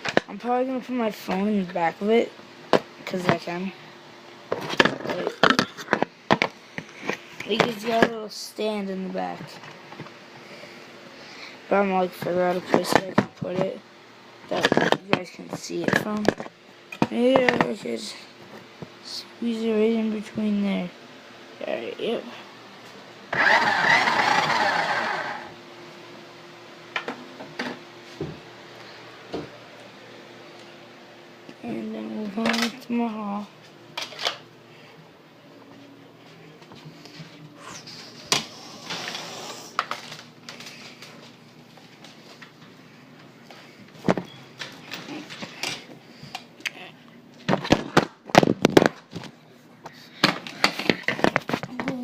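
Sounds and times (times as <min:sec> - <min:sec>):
toy truck motor whirring: 0:23.3 - 0:25.5.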